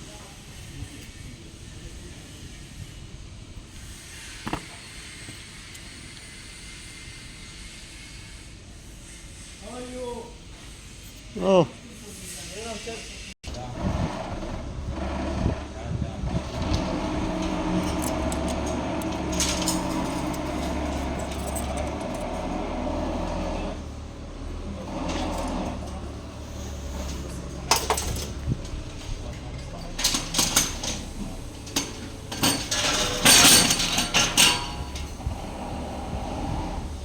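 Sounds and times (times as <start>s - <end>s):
metal parts and tools clanking: 4.4s - 4.7s, 16.3s - 23.6s, 24.8s - 35.6s.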